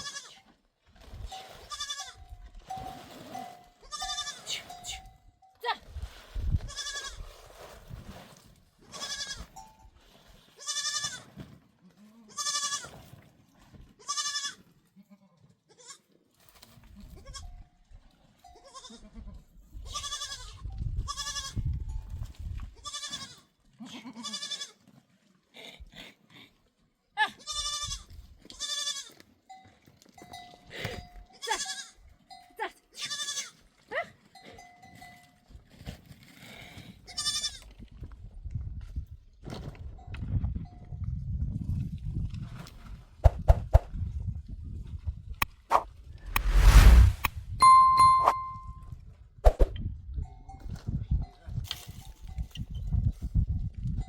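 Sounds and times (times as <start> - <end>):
goats and sheep bleating: 1.3 - 2.3, 3.4 - 4.9, 12.0 - 13.0, 14.0 - 16.1, 22.8 - 24.9, 27.4 - 29.2, 31.4 - 32.0, 33.0 - 33.6
livestock bell clinking: 2.7 - 5.6, 18.4 - 18.8, 29.5 - 31.4, 32.3 - 32.6, 34.3 - 35.4, 47.6 - 48.8.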